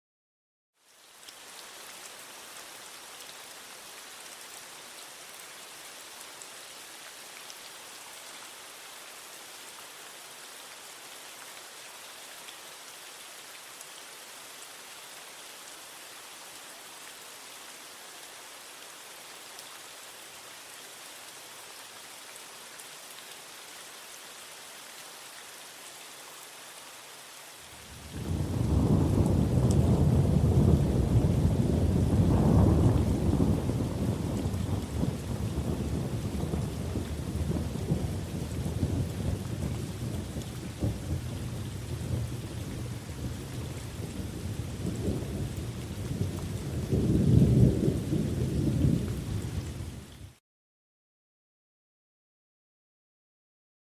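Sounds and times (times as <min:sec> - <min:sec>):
rain falling on concrete: 0:00.7 - 0:50.4
rolling thunder: 0:28.1 - 0:49.9.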